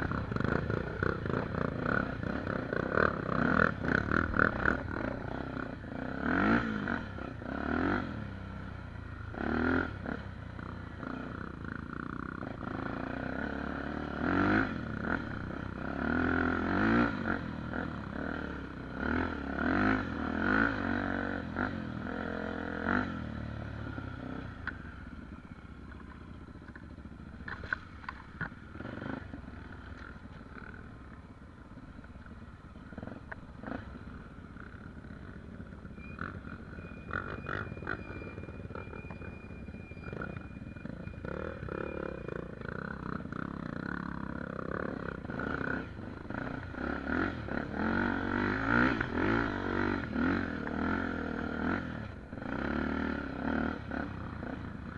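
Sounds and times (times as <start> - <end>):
dirt bike engine revving: 0.0 - 10.4, 11.0 - 24.9, 36.0 - 54.9.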